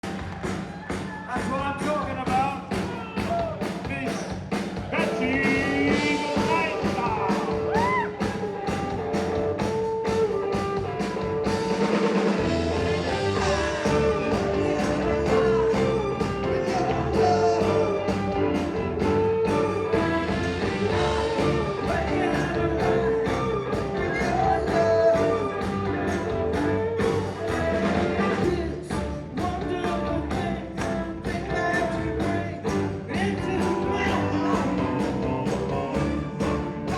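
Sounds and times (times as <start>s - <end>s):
steady drum beat: 0.0s - 36.9s
bass guitar: 1.5s - 36.9s
person singing: 4.9s - 9.1s, 11.5s - 36.9s.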